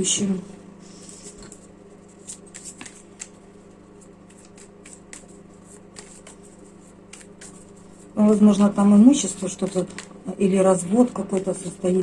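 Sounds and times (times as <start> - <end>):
faint steady hum: 0.0 - 12.0
cards flicking and tapping: 1.4 - 8.4.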